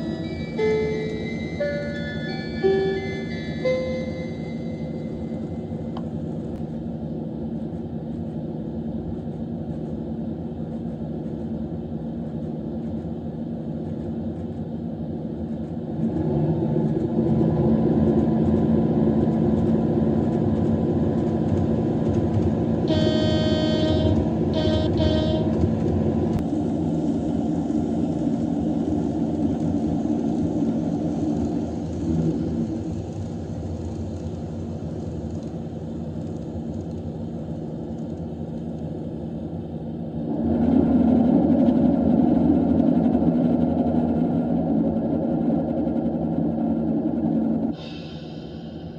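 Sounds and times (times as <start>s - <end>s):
diesel railcar engine: 0.0s - 48.9s
train horn: 22.8s - 25.8s.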